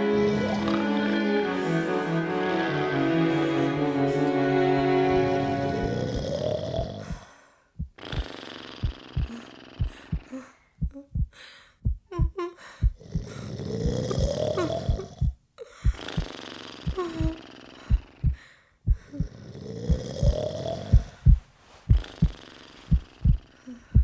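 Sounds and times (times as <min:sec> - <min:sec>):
person snoring: 0:05.8 - 0:07.2, 0:13.0 - 0:15.2
low rhythmic thumps: 0:07.0 - 0:24.0.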